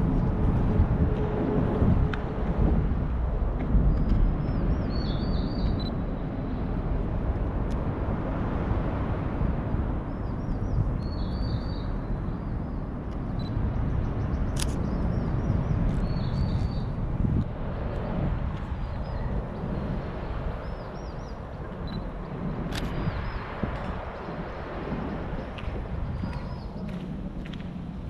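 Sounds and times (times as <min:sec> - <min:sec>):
steady low rumble: 0:00.0 - 0:28.0
songbird singing: 0:03.9 - 0:06.6, 0:10.1 - 0:17.0, 0:18.8 - 0:27.1.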